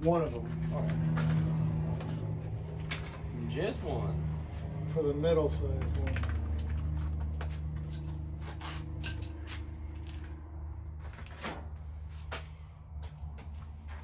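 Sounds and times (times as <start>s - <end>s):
small metal parts clinking: 7.9s - 8.2s, 9.0s - 10.2s.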